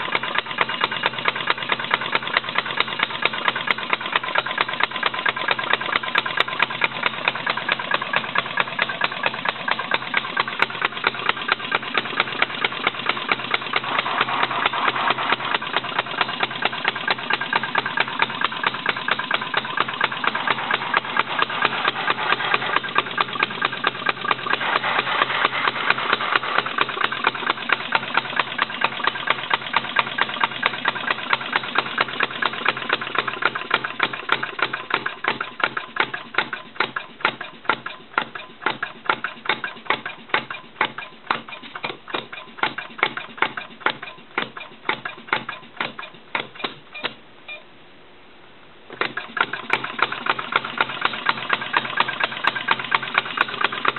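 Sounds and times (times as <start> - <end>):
engine firing in even beat: 0.0 - 47.1.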